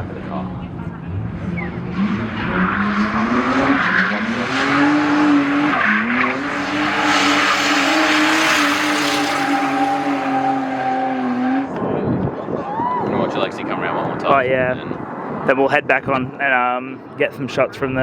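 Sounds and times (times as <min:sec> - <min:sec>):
car engine at high revs: 0:00.2 - 0:11.9
tyres screeching: 0:03.8 - 0:11.7.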